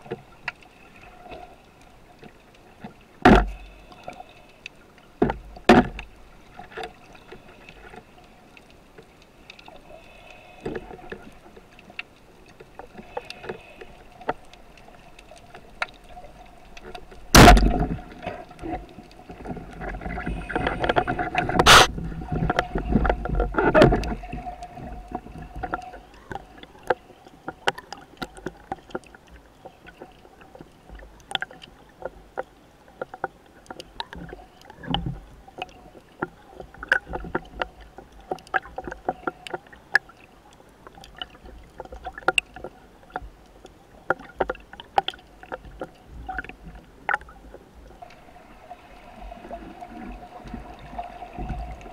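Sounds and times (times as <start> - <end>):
sharp clicks and crackles: 0.0 - 48.2
faint steady hum: 0.0 - 51.9
churning water: 12.4 - 40.2, 44.0 - 51.9
sharp underwater knock: 17.3 - 17.8
loud underwater crack: 17.3 - 18.2, 20.4 - 22.4.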